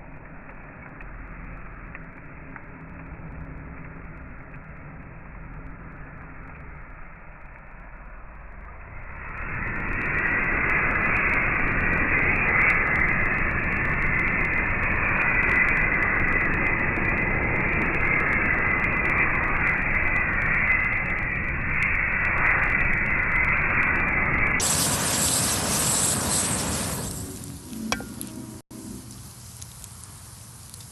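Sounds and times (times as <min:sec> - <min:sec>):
bellows air roaring into fire: 0:07.9 - 0:29.8.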